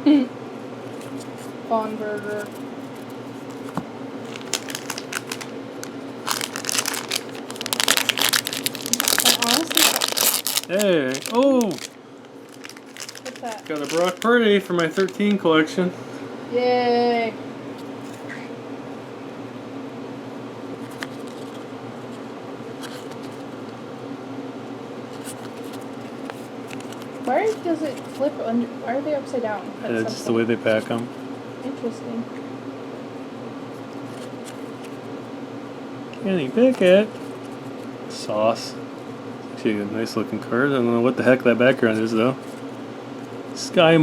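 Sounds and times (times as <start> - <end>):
card pack rustling and crinkling: 2.2 - 15.4, 20.8 - 22.2, 22.8 - 23.6, 25.1 - 28.3, 34.0 - 35.0, 41.7 - 43.4.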